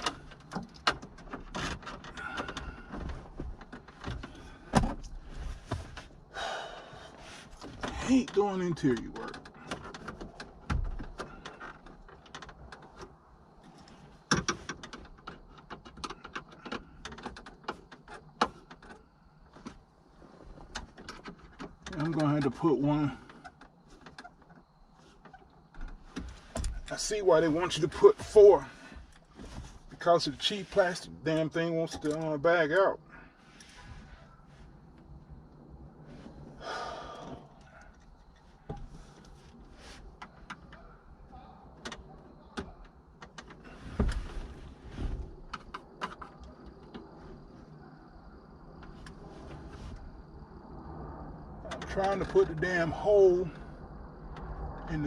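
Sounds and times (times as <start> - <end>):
plastic car trim rattling: 0.0 - 6.1, 7.6 - 22.6, 37.6 - 47.5
man exhaling heavily: 6.3 - 7.2, 36.6 - 37.5.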